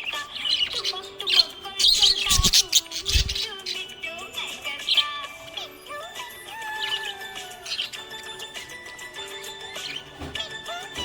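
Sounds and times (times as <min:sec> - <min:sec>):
budgie chirping: 0:00.0 - 0:05.8
song with held melodic notes: 0:03.1 - 0:11.0.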